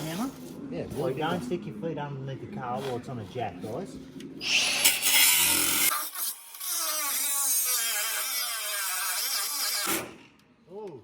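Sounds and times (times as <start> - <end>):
angle grinder cutting steel: 4.4 - 10.2.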